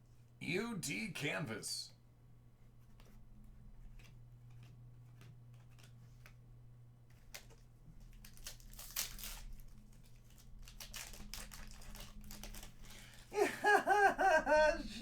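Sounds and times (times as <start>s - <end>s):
faint low hum: 0.0s - 15.0s
cards rustling and clicking: 2.8s - 13.4s
wrapper crinkling and tearing: 7.2s - 13.3s.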